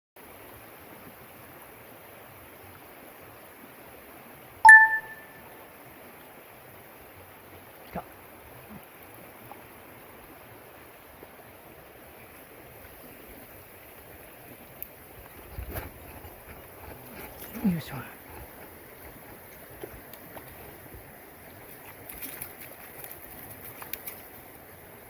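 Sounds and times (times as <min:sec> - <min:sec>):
mountain stream flowing: 0:00.2 - 0:25.0
sharp ringing ping: 0:04.7 - 0:05.3.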